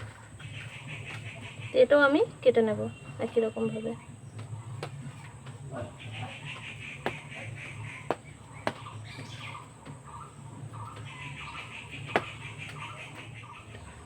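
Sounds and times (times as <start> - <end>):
birds chirping: 0.0 - 14.0
knife knocking through eggs: 7.0 - 10.0, 10.8 - 14.0.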